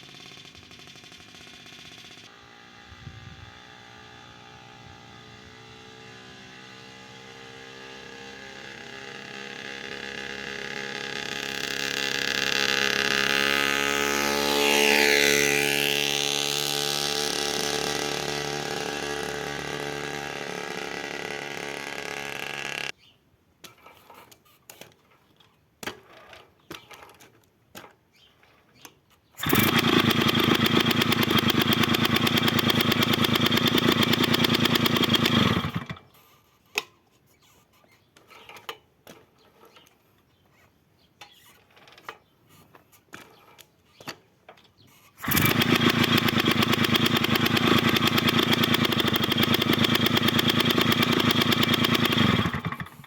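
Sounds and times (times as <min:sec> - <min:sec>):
moped two-stroke engine running: 0:00.0 - 0:22.9, 0:29.4 - 0:36.0, 0:45.2 - 0:53.0.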